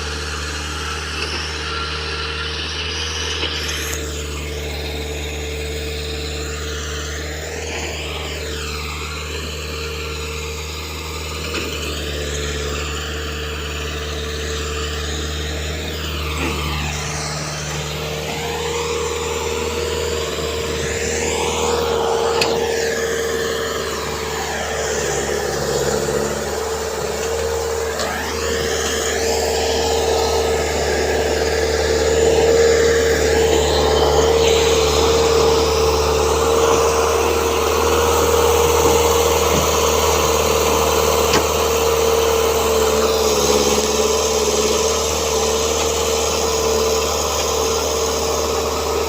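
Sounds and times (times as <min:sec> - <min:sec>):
excavator diesel engine running: 0:00.0 - 0:49.0
high-pitched whine: 0:00.0 - 0:49.0.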